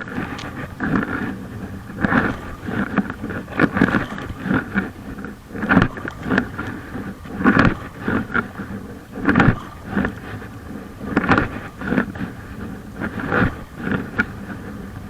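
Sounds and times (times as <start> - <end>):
paddle splashing in water: 0.0 - 15.0
wind noise on microphone: 0.0 - 15.0.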